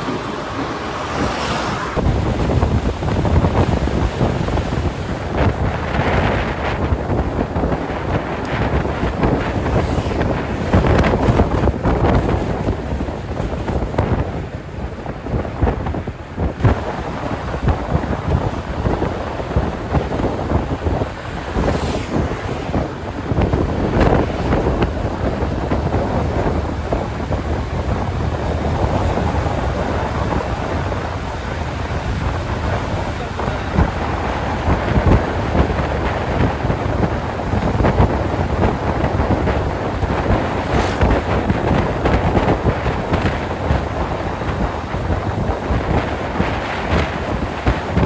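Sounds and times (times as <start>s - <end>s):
low rumble: 0.0s - 2.8s
wind buffeting microphone: 0.0s - 48.0s.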